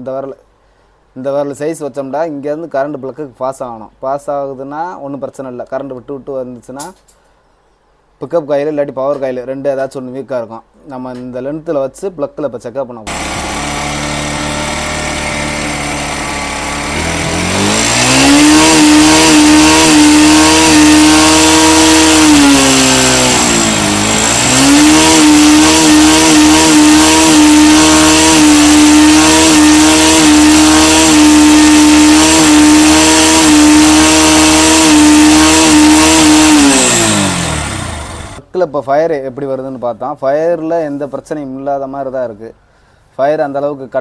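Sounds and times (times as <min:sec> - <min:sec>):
motorcycle engine revving: 0:13.1 - 0:38.4.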